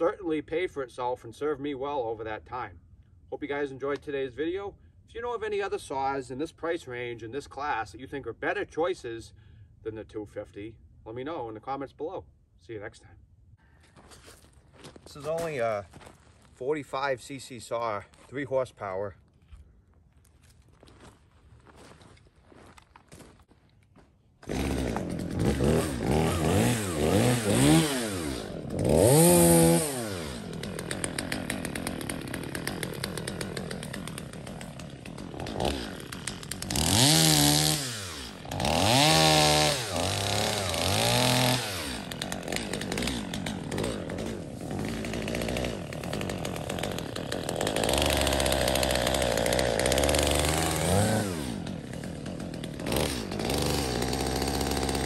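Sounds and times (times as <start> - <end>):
chainsaw revving: 24.4 - 55.0.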